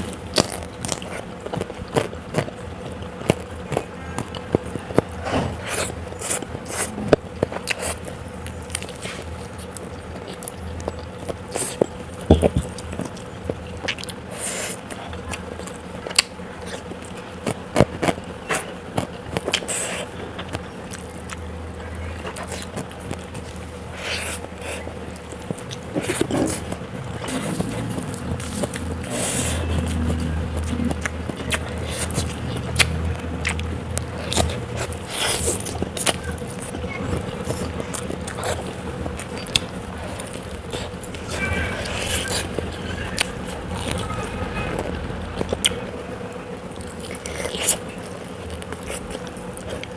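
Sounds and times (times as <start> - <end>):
low steady hum: 0.0 - 49.9
person chewing and crunching food: 0.0 - 49.9
mouth clicks and smacks: 25.2 - 44.0.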